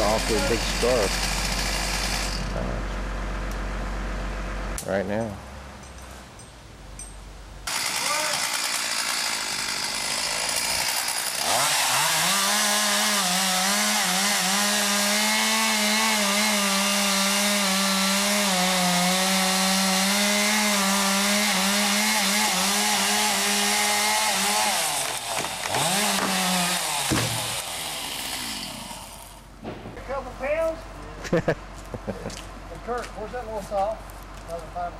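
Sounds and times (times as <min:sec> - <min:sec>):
chainsaw cutting wood: 0:00.0 - 0:02.6, 0:07.6 - 0:29.5.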